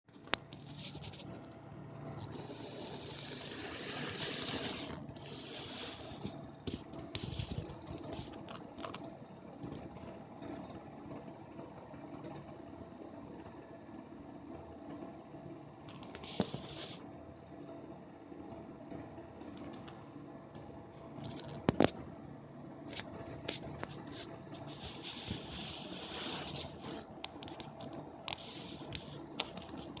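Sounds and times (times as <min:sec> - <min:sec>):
power supply buzzing crackle: 0:00.1 - 0:10.2, 0:15.8 - 0:17.0, 0:19.4 - 0:22.0, 0:22.9 - 0:30.0.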